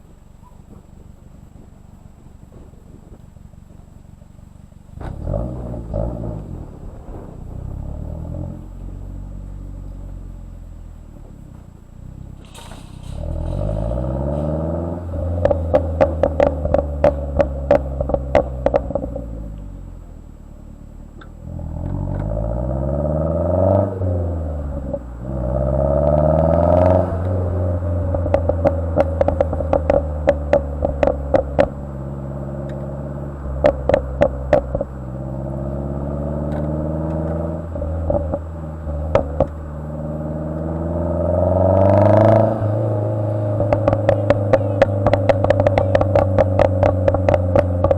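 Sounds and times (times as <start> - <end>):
car engine revving: 0.0 - 47.9
exhaust pops and crackles: 0.0 - 47.9.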